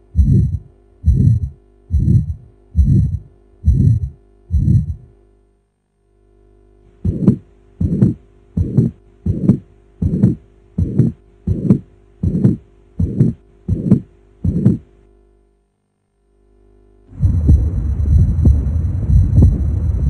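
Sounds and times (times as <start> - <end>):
heartbeat: 0.0 - 5.1, 7.0 - 14.9, 17.2 - 20.0
faint steady hum: 0.0 - 20.0.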